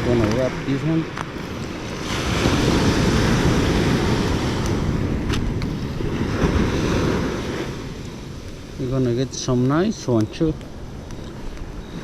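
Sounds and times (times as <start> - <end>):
wind rushing: 0.0 - 9.4
waves: 0.0 - 12.0.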